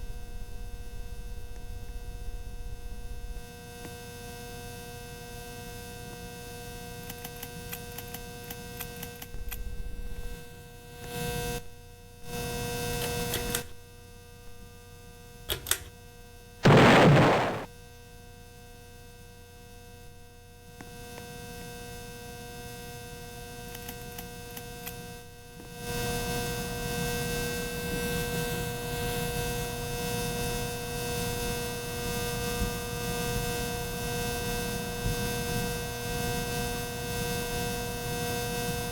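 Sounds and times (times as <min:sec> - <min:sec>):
loud noise burst: 0:16.6 - 0:17.7.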